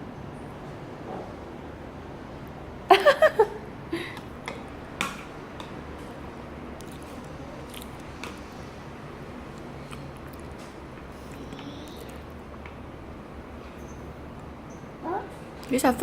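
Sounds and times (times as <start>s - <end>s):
toddler vocalizing: 15.0s - 15.4s.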